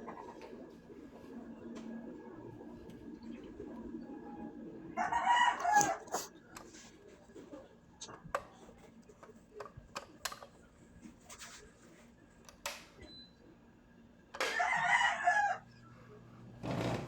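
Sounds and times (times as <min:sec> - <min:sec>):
rooster crowing: 0:05.0 - 0:06.0, 0:14.5 - 0:15.7
faint clicks and taps: 0:08.0 - 0:11.5.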